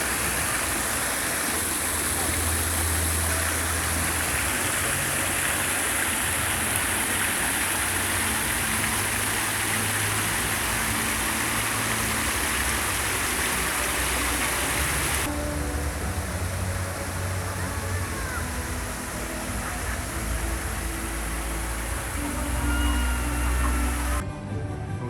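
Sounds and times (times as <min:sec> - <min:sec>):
running water rushing: 0:00.0 - 0:24.2.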